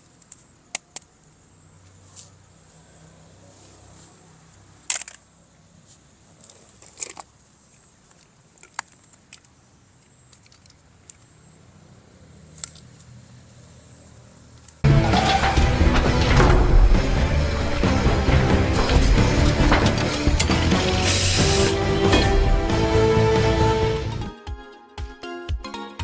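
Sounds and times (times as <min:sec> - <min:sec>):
plastic toy parts clicking: 0:04.8 - 0:05.3, 0:06.4 - 0:07.3, 0:08.1 - 0:11.3, 0:12.5 - 0:13.1.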